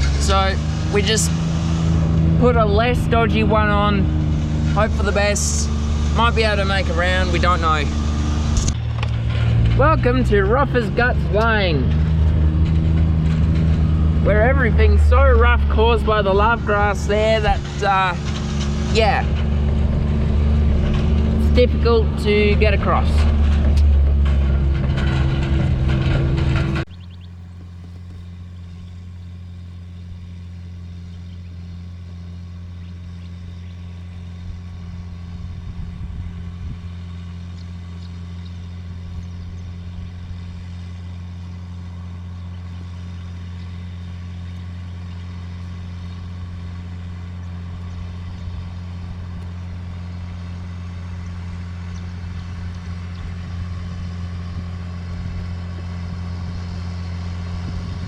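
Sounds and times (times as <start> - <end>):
tractor diesel engine droning: 0.0 - 58.0.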